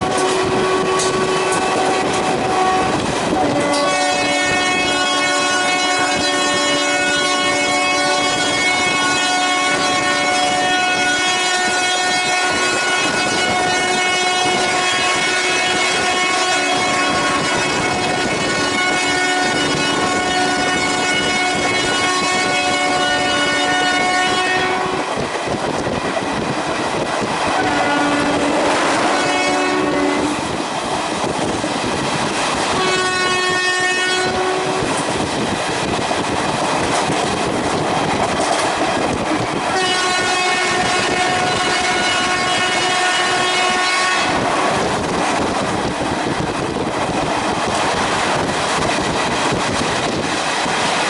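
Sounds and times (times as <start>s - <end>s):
train horn blasts: 0.0s - 25.2s, 27.5s - 30.6s, 32.7s - 35.0s, 39.1s - 45.4s
train clattering on track: 0.0s - 51.0s.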